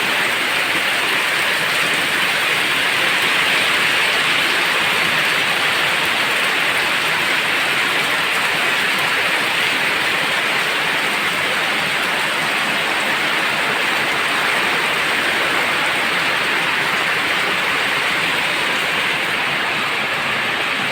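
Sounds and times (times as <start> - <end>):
heavy rain downpour: 0.0 - 20.9.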